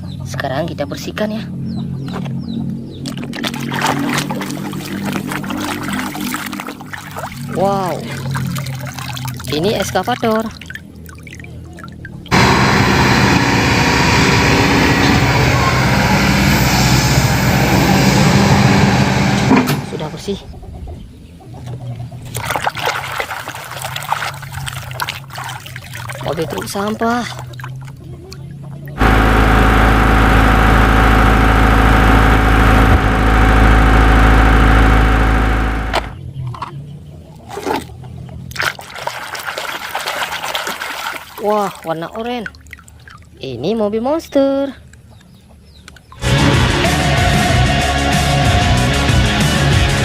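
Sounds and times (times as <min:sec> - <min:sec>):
machine humming and hissing: 0:12.3 - 0:20.1, 0:29.0 - 0:36.2
motor running loudly: 0:12.3 - 0:20.3, 0:29.0 - 0:36.2.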